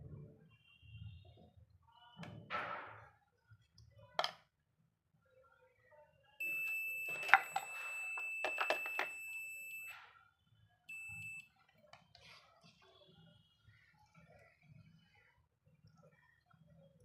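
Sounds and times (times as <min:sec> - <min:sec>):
high-pitched electronic beep: 0:06.4 - 0:10.0, 0:10.9 - 0:11.4.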